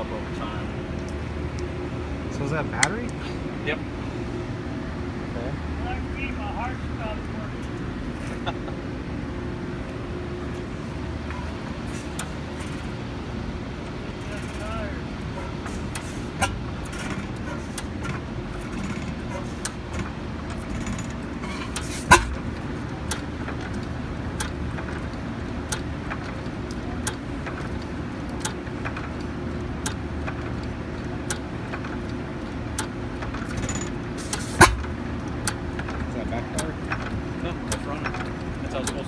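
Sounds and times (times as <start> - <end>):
stationary engine popping: 10.6 - 39.0.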